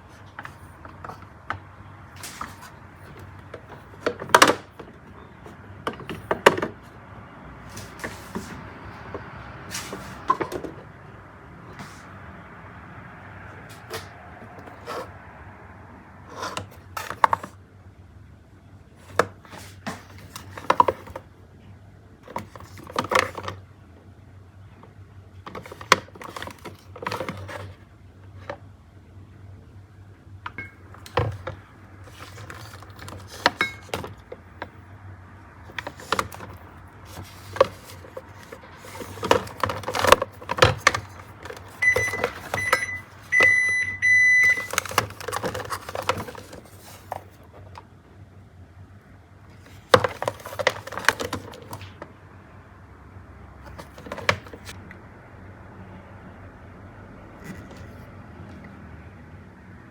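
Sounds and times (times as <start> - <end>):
food containers clicking and knocking: 0.2 - 6.9, 7.7 - 10.9, 16.3 - 17.6, 19.0 - 21.3, 22.2 - 23.6, 25.4 - 27.8, 30.4 - 34.9, 35.6 - 47.9, 49.6 - 52.1, 53.7 - 54.8
packaging rustling: 31.0 - 34.7, 35.7 - 43.5, 44.4 - 47.8, 49.6 - 52.0
refrigerator door alarm beeping: 41.7 - 45.0.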